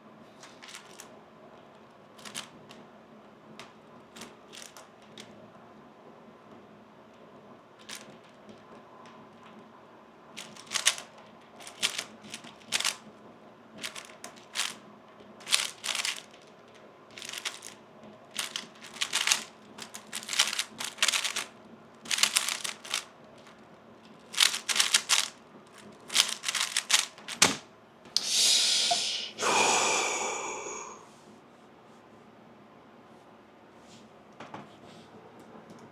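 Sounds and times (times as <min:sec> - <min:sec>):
speed cube clicking: 0:10.4 - 0:11.0, 0:15.4 - 0:16.3, 0:18.4 - 0:21.5, 0:22.1 - 0:23.1, 0:24.3 - 0:25.4, 0:26.0 - 0:27.6.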